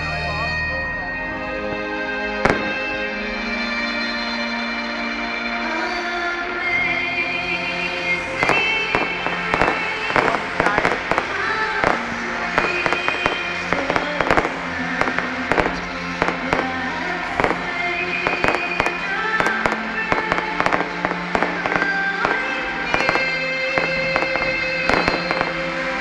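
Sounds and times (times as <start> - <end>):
music playing: 0.0 - 26.0
fireworks bangs and crackles: 2.3 - 3.4, 6.4 - 26.0.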